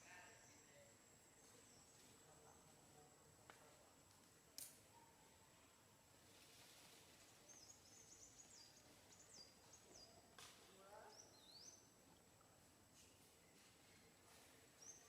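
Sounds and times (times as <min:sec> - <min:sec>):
faint high-pitched bird chirps: 0:13.4 - 0:15.0.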